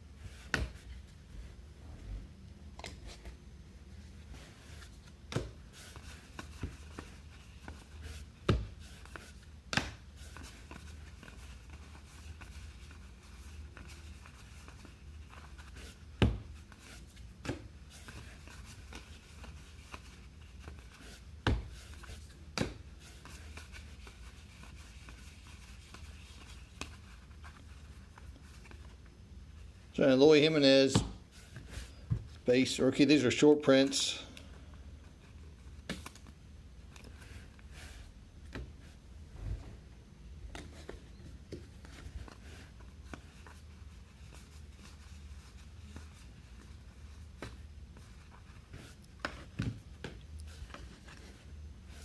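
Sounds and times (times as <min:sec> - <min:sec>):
steady low hum: 0:00.0 - 0:33.3.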